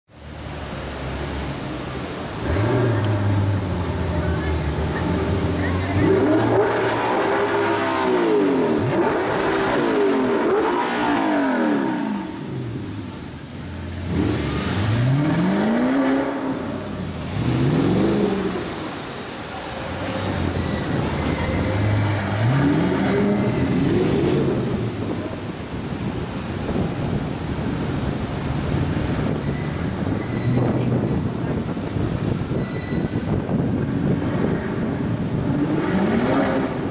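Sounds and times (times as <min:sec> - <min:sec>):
street traffic noise: 0:00.0 - 0:36.9
sports car engine revving: 0:02.3 - 0:19.1, 0:20.0 - 0:25.4, 0:33.2 - 0:36.9.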